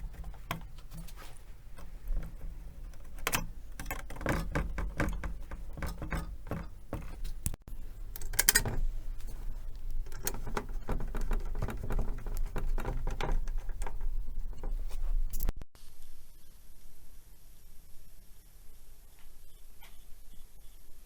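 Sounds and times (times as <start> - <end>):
small parts clicking and tapping: 0.0 - 15.5.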